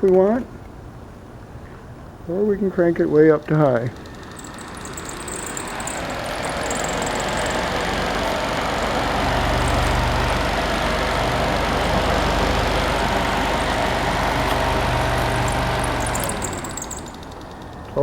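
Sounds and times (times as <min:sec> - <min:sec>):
fan whirring rushing air: 0:00.5 - 0:18.0
low motor hum: 0:03.9 - 0:18.0.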